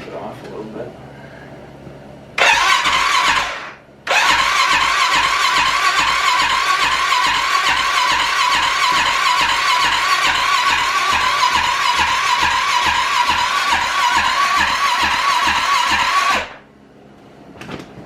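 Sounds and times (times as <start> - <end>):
electric starter cranking engine: 2.4 - 16.7.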